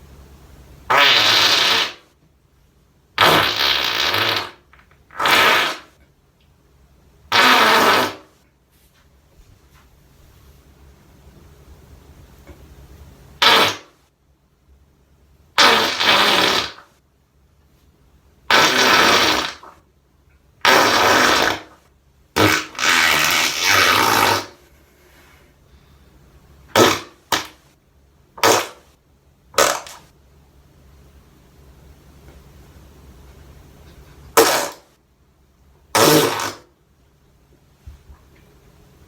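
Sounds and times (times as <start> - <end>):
fart sound effects: 0.9 - 2.2, 3.2 - 6.0, 7.3 - 8.4, 13.4 - 14.0, 15.5 - 17.0, 18.5 - 19.8, 20.6 - 24.7, 26.7 - 27.7, 28.4 - 30.1, 34.3 - 35.0, 35.9 - 36.8.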